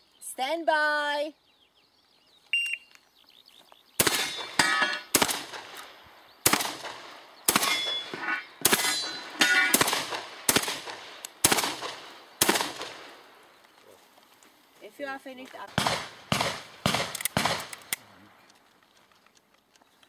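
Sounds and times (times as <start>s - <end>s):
shot timer beep: 2.6s - 2.9s
shotgun shots: 4.0s - 13.2s, 15.7s - 18.0s
metallic ring of steel targets: 4.1s - 5.1s, 7.5s - 9.9s.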